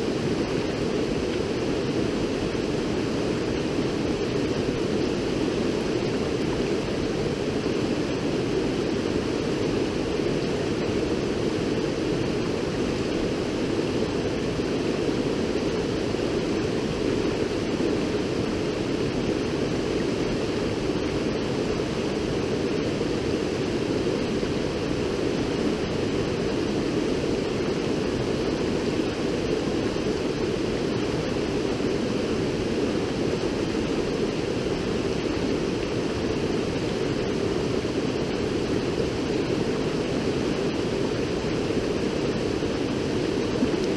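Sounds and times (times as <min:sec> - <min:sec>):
river water rushing: 0:00.0 - 0:43.9.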